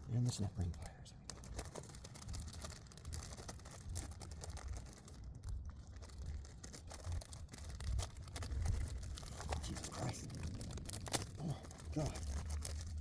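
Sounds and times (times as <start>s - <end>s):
low rumble: 8.1s - 13.0s.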